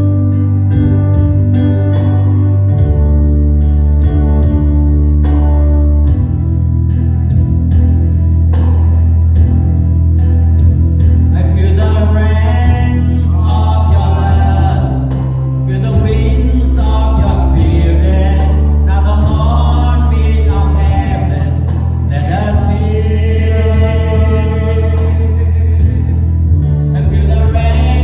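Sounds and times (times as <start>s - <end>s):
worship band playing: 0.0s - 28.0s
group of voices singing: 12.0s - 26.4s.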